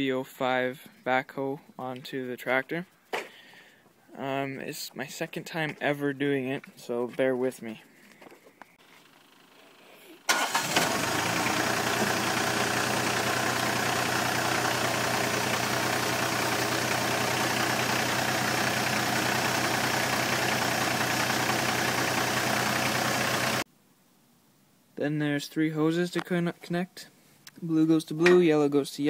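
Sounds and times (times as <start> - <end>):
tractor diesel engine running: 10.3 - 23.6.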